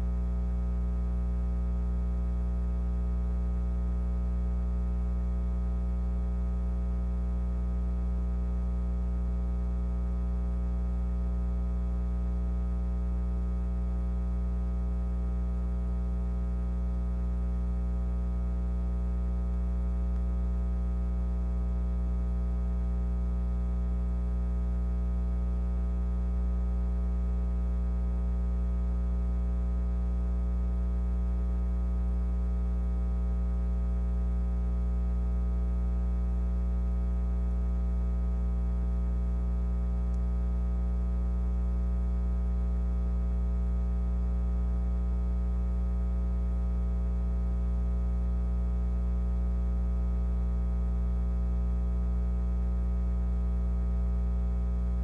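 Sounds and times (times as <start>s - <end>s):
low electrical hum: 0.0s - 54.0s.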